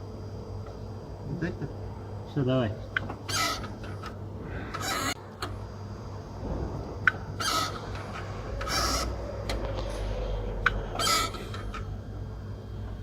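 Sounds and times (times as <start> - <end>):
clutch actuator squeaking: 3.1 - 4.1, 7.4 - 9.7, 10.6 - 12.0.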